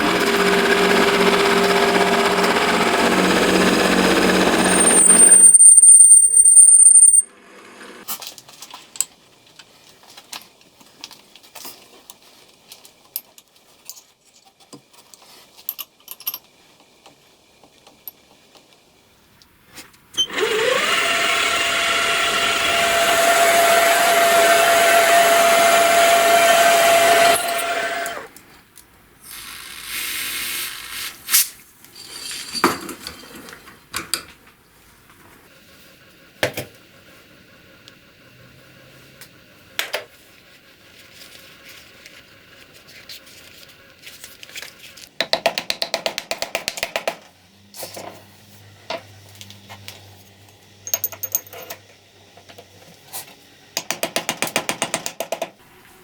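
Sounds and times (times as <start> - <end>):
power tool whining: 0.0 - 8.0, 20.2 - 28.3
metal parts clicking and knocking: 50.9 - 51.9.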